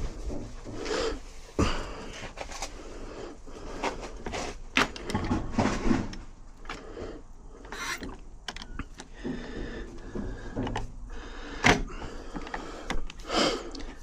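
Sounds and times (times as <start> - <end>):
metal parts scraping: 7.6 - 8.9
metal lock parts clicking: 7.6 - 9.2.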